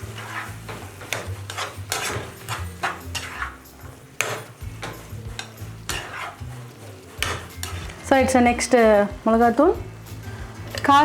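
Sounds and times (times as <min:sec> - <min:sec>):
ladle scraping a cooking pan: 0:00.0 - 0:08.4.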